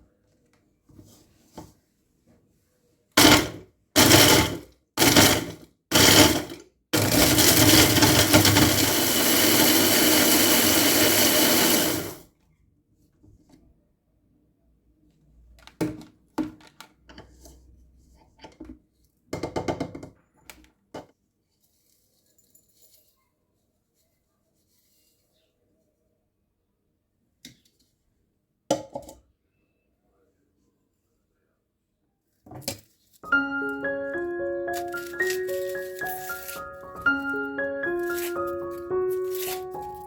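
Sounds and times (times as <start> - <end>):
electric blender running: 3.2 - 12.2.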